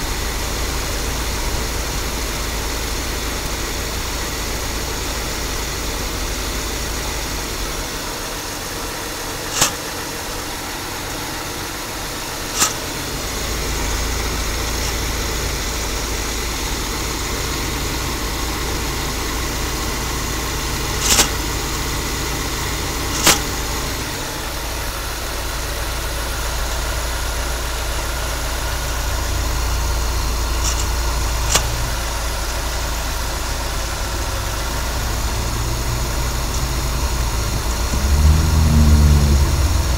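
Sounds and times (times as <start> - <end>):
engine idling with grinding noise: 0.0 - 39.9.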